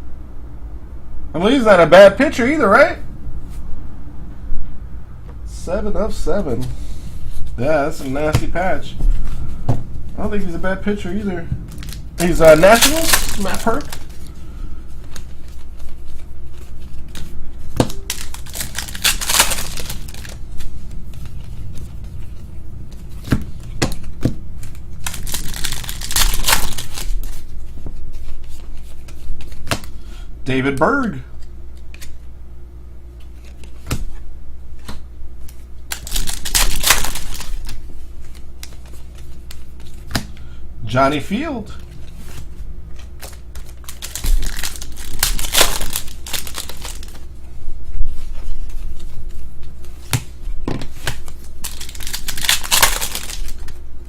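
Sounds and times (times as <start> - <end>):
card rustle: 6.6 - 29.9, 34.8 - 40.3, 41.7 - 47.3, 48.0 - 53.8
trading cards clicking and snapping: 11.7 - 14.3, 16.6 - 20.4, 23.2 - 27.4, 28.5 - 29.9, 34.8 - 40.4, 43.0 - 47.2, 51.0 - 53.8.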